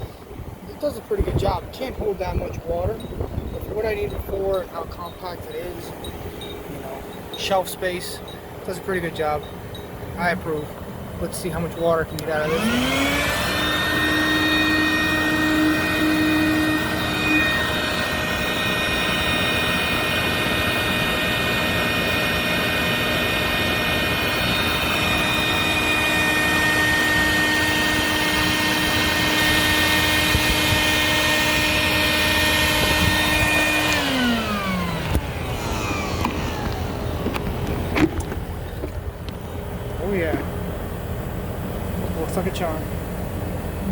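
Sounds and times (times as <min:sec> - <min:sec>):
shop vacuum motor whining: 0:11.5 - 0:40.7
vacuum motor spinning down: 0:12.1 - 0:39.4.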